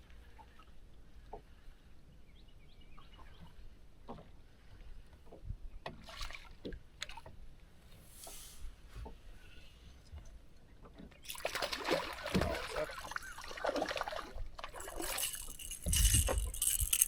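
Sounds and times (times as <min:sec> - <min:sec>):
water lapping: 0:11.2 - 0:17.0.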